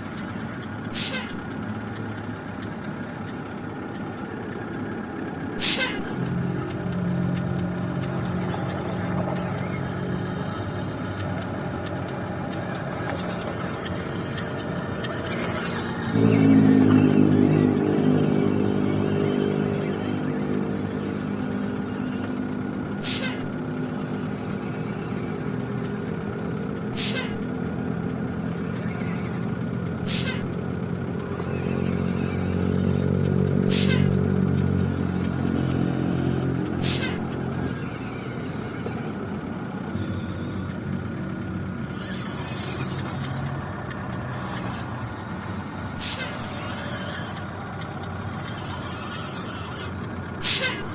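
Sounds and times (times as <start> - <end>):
deep engine-like drone: 0.0 - 50.9
sharp hisses: 5.6 - 5.9, 23.0 - 23.4, 27.0 - 27.3, 30.1 - 30.3, 33.7 - 34.0, 36.8 - 37.1, 46.0 - 46.4, 50.4 - 50.8.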